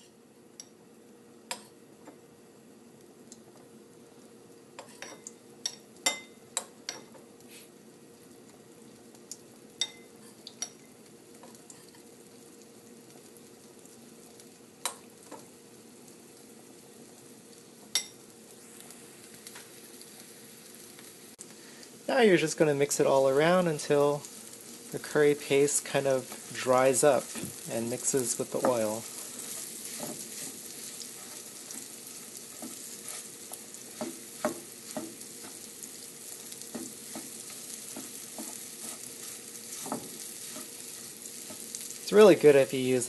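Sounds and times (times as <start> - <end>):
paste sizzling in oil: 8.7 - 43.0.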